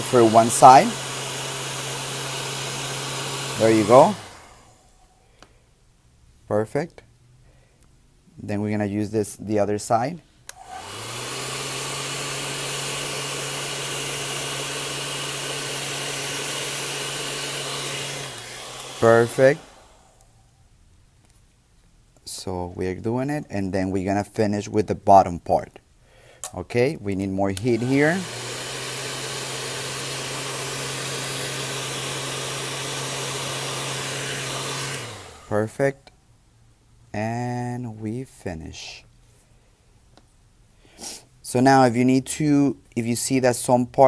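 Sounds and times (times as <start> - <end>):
hot-air blower running: 0.0 - 5.1, 10.5 - 20.4, 27.5 - 35.7.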